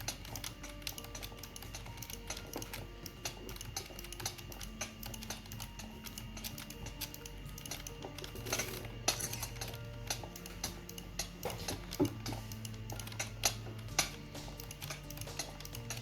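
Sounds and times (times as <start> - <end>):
keyboard typing: 0.0 - 16.0
soft background music: 0.0 - 16.0.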